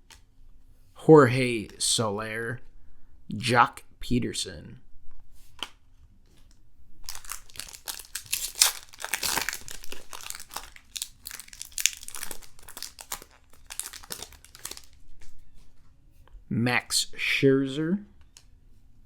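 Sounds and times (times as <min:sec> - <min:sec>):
foil wrapper crinkling and tearing: 0:07.0 - 0:15.1.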